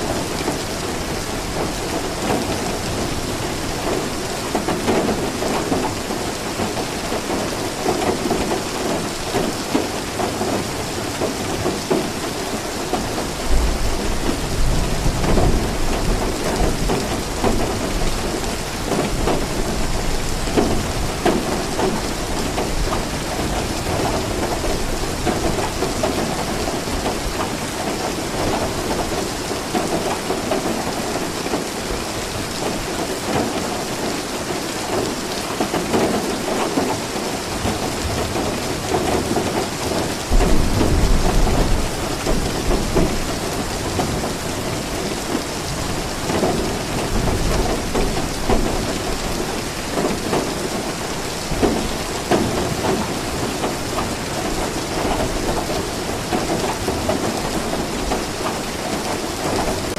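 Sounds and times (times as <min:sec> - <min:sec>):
steady rain falling: 0:00.0 - 0:59.9
low rumble of thunder: 0:12.9 - 0:27.2, 0:37.6 - 0:50.5.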